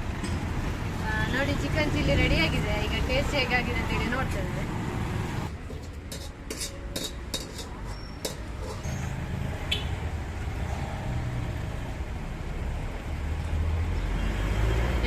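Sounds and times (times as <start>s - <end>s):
low rumble of traffic: 0.0s - 15.0s
cutlery clinking on a plate: 5.7s - 8.9s.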